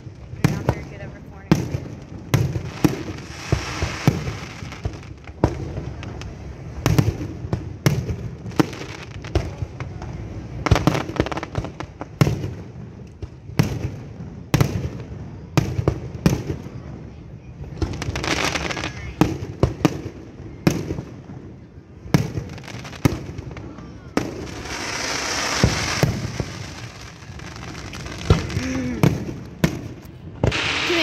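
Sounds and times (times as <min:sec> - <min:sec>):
fireworks bangs and pops: 0:00.0 - 0:31.0.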